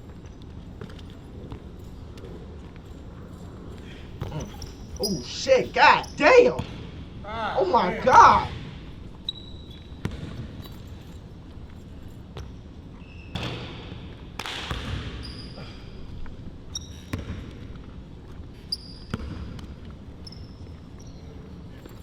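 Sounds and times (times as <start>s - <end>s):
sneakers squeaking: 3.8s - 6.8s, 7.6s - 10.6s
basketball bouncing on gym floor: 6.6s - 6.8s.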